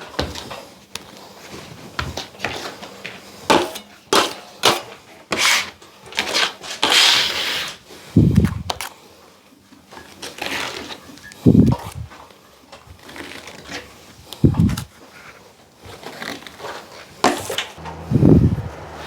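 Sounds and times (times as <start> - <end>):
drywall knife scraping plaster: 3.5 - 7.8
dull low bump: 17.8 - 19.0.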